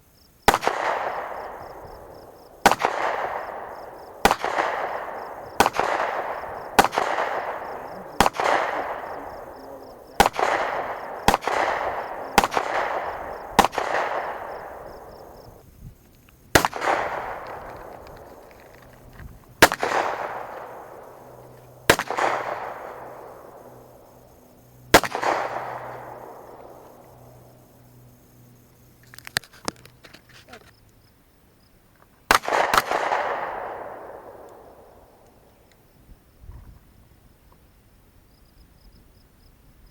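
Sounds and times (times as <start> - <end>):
gunshots with rolling echo: 0.4 - 15.6, 16.5 - 28.2, 32.3 - 35.6.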